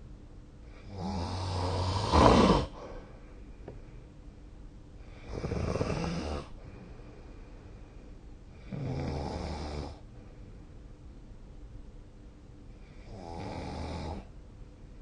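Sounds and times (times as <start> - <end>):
person snoring: 0.8 - 3.0, 5.1 - 6.6, 8.6 - 10.0, 13.0 - 14.3.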